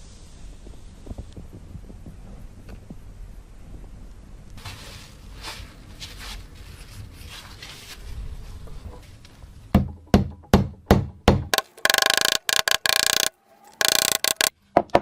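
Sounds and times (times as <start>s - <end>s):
sharp knocks: 9.8s - 15.0s.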